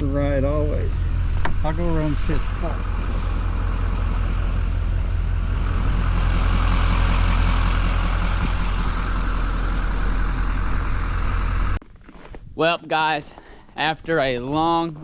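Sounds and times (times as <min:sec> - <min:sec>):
vehicle engine idling: 0:00.0 - 0:11.8.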